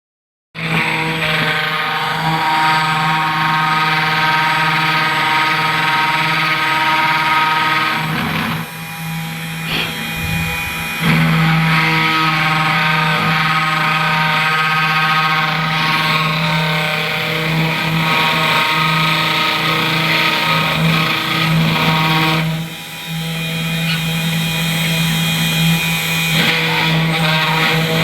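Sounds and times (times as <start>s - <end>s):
spindle motor whining: 0.6s - 28.0s.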